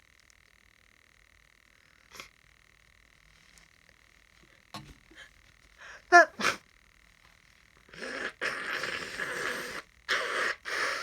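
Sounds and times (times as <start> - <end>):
person sneezing: 6.1 - 6.6
person blowing their nose: 8.0 - 11.0.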